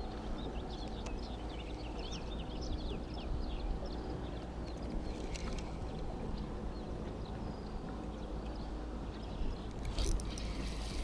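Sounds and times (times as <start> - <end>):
small birds chirping: 0.0 - 11.0
steady low rumble: 0.0 - 11.0.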